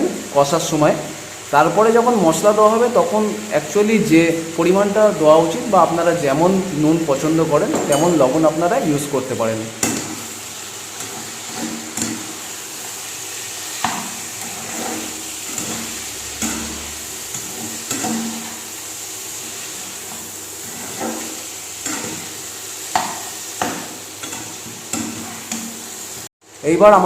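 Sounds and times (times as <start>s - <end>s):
food sizzling in hot oil: 0.0s - 27.0s
spatula scraping a pan: 9.8s - 26.0s.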